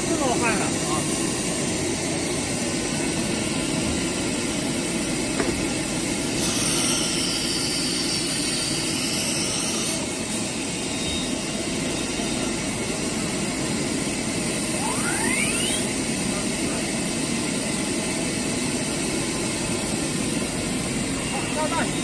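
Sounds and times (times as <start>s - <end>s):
cnc router running: 0.0s - 22.0s
high whine: 6.2s - 16.8s.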